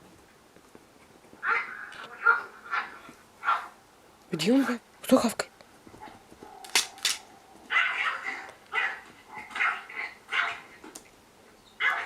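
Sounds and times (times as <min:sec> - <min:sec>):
dog barking: 0:01.4 - 0:03.8, 0:07.7 - 0:10.6, 0:11.8 - 0:12.0.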